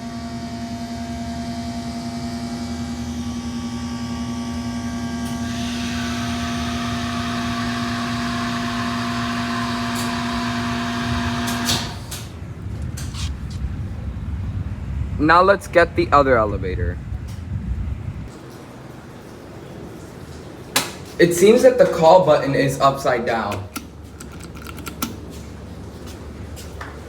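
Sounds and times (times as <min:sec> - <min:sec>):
pump motor humming: 0:00.0 - 0:12.1
valve clicks: 0:23.5 - 0:25.2.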